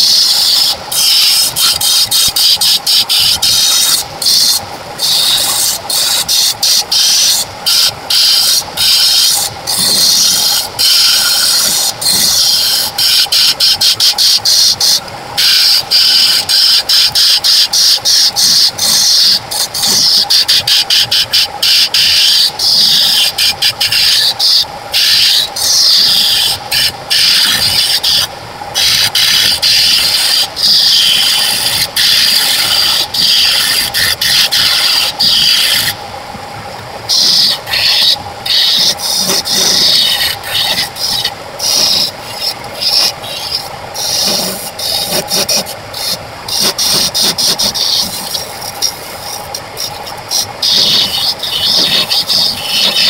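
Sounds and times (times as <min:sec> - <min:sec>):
lathe tool scraping wood: 0:00.0 - 0:36.0, 0:37.1 - 0:53.0
lathe motor hum: 0:00.0 - 0:53.0.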